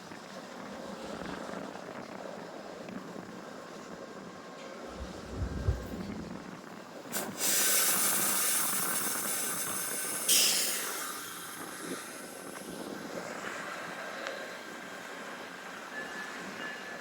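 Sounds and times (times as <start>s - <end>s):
train passing close by: 4.4s - 17.0s.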